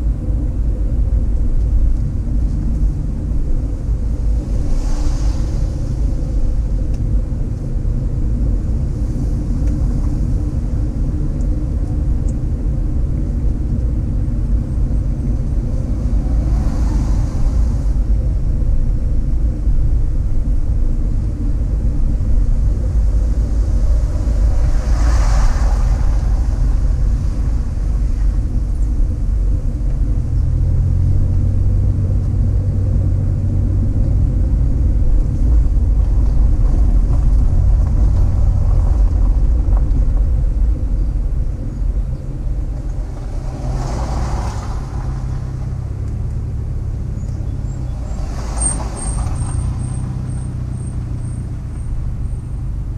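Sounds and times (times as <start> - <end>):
car road rumble: 0.0 - 52.9
vehicles passing: 0.0 - 52.9.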